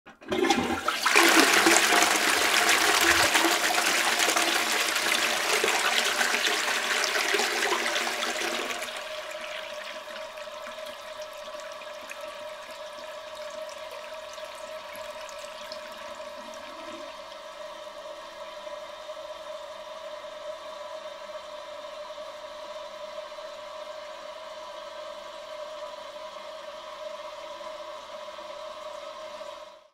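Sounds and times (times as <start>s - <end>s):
toilet flushing: 0.1s - 18.9s
toilet tank refilling hiss: 0.1s - 19.3s.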